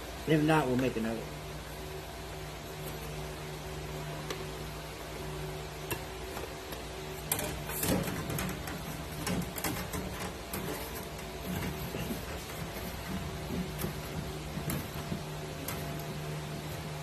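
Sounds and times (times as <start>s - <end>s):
steady low hum: 0.0s - 17.0s
sheet metal panel knocks and rattles: 7.2s - 16.0s.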